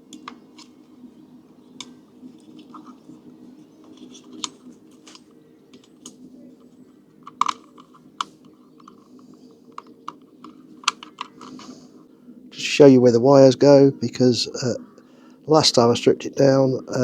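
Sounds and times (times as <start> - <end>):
steady low hum: 0.0 - 17.0
plastic connector clicks: 7.2 - 9.0, 9.7 - 11.5.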